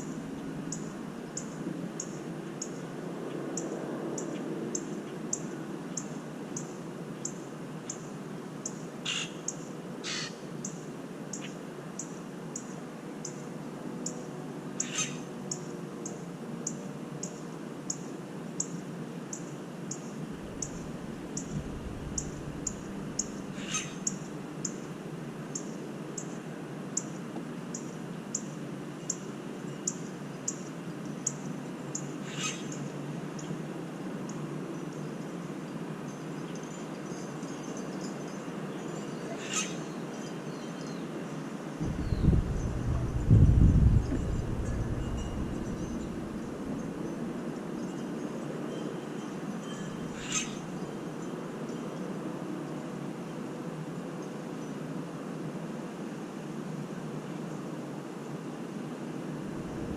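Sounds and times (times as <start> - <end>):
gusty wind: 20.2 - 24.6, 41.8 - 47.8, 58.9 - 59.9.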